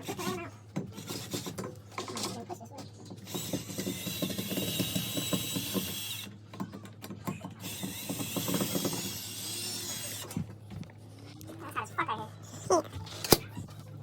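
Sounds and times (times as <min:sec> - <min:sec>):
power drill driving screws: 0:03.3 - 0:06.3, 0:07.6 - 0:10.4.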